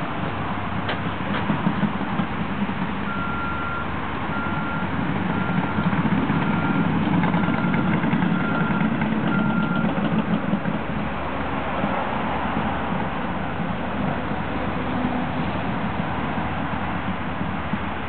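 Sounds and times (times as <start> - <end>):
diesel engine running: 0.0 - 18.0
reversing alarm beeping: 3.1 - 10.0.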